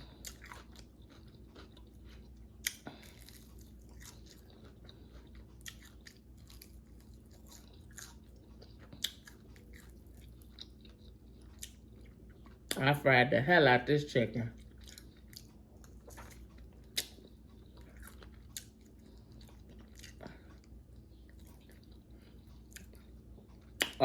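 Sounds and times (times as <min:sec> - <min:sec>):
crunching crispy chicken wings: 0:00.0 - 0:12.9.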